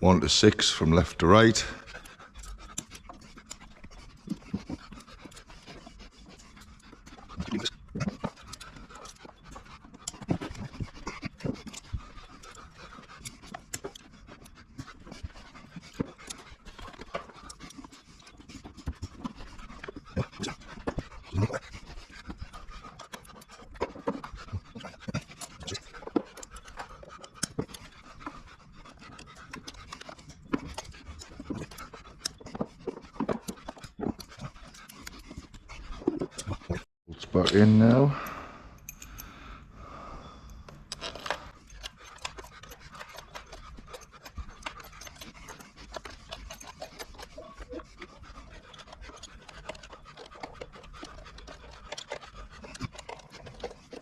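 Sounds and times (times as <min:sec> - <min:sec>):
steady breathy sound: 0:00.0 - 0:10.0, 0:37.6 - 0:54.0.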